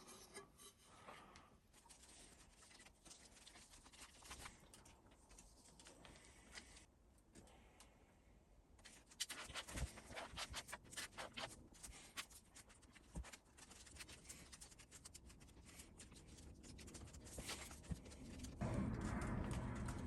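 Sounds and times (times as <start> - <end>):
scraping metal with tool: 0.0 - 1.0.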